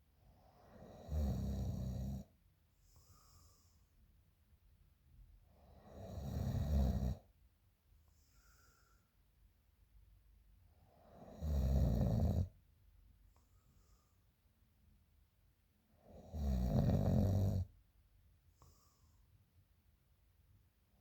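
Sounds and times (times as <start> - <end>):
woman snoring loudly: 0.8 - 2.2, 5.9 - 7.2, 11.3 - 12.5, 16.2 - 17.6.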